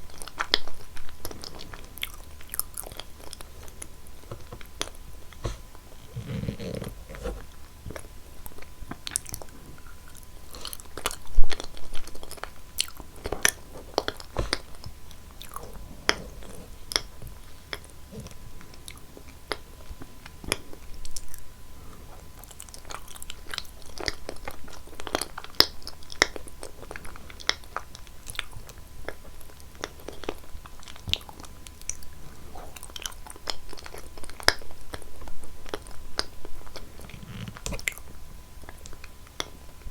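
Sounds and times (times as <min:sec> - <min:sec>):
person biting and chewing: 0:02.0 - 0:09.4, 0:12.2 - 0:18.4.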